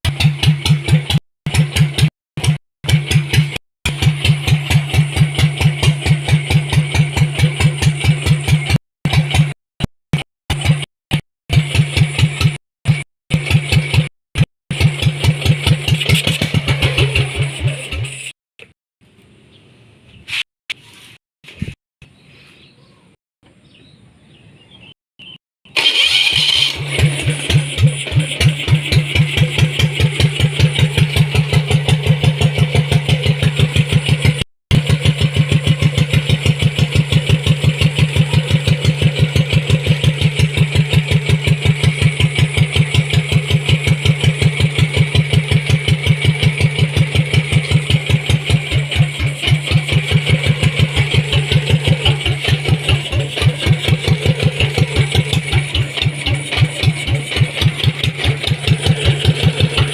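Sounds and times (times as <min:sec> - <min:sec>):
diesel engine running: 0:25.8 - 0:59.9.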